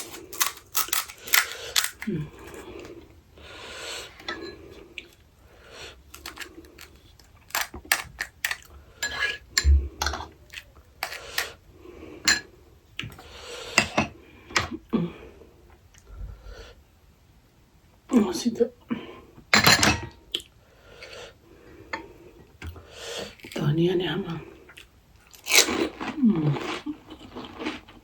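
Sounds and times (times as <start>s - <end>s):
crunching and mouth sounds: 0.0s - 3.2s, 5.9s - 8.7s, 24.7s - 28.0s
utensils clinking against dishes: 4.2s - 4.6s.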